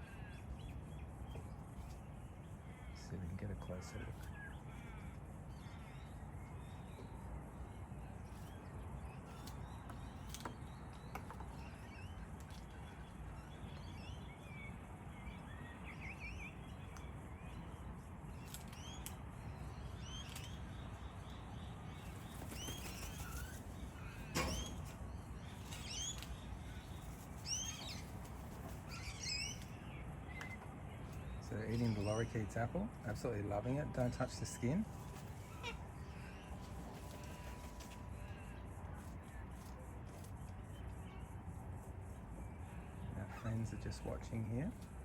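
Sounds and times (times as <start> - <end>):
low background noise: 0.0 - 45.0
parrots chirping: 8.4 - 37.8.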